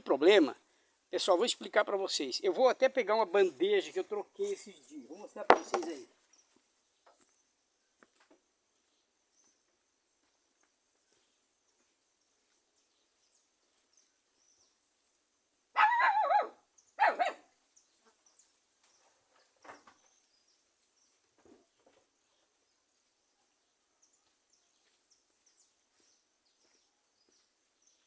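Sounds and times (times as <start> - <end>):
faint taps and rustles: 5.4 - 7.4.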